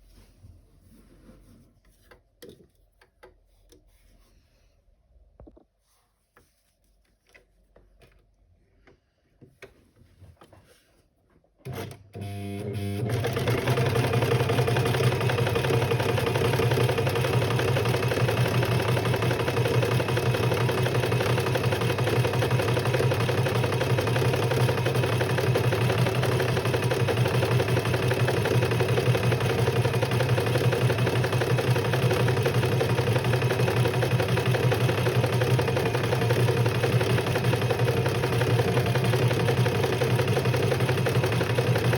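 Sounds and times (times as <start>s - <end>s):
sewing machine running: 11.7s - 41.9s.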